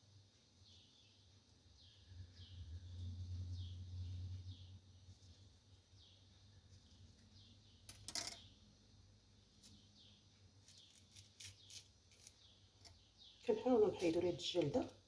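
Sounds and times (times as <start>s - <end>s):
knife cutting lemon peel: 10.7s - 12.4s.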